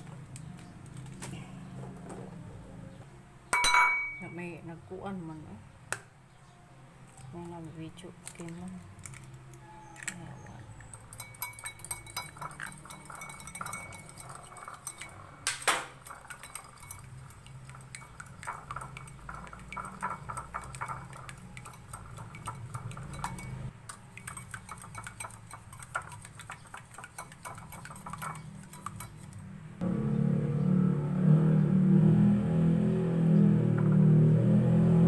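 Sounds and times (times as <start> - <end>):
bowl and utensils clinking: 3.5 - 4.5, 8.0 - 29.5.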